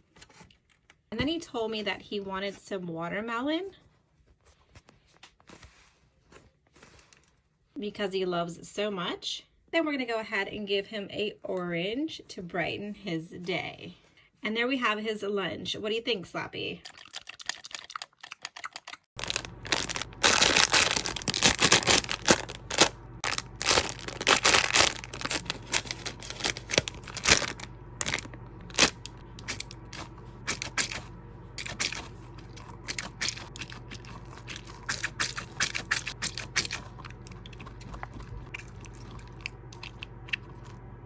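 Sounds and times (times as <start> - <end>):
low steady hum: 0.0 - 4.8, 19.2 - 41.0
food crunching and crackling: 16.8 - 41.0.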